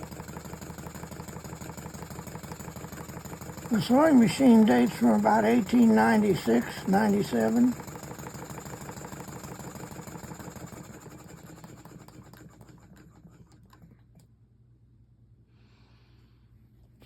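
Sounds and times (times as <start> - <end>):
sewing machine clattering: 0.0 - 14.0.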